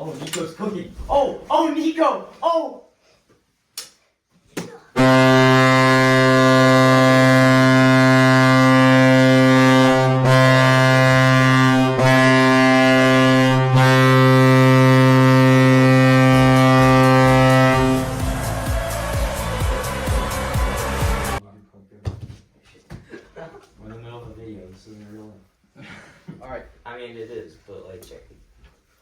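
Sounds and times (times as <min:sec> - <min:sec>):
goal horn blast: 0:05.0 - 0:21.4
music: 0:16.3 - 0:21.4.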